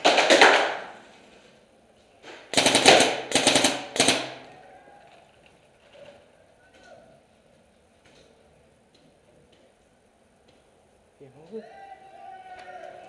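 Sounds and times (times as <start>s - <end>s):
paintball markers firing: 0.0s - 1.0s, 2.3s - 4.7s.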